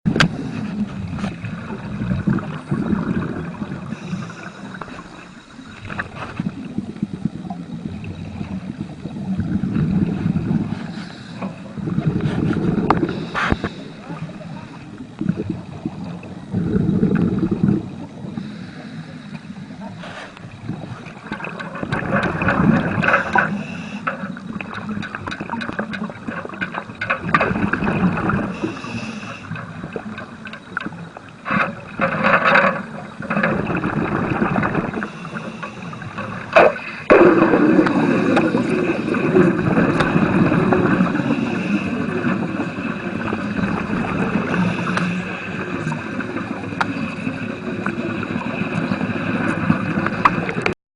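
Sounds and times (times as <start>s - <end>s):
underwater welding rushing and bubbling: 0.0s - 50.8s.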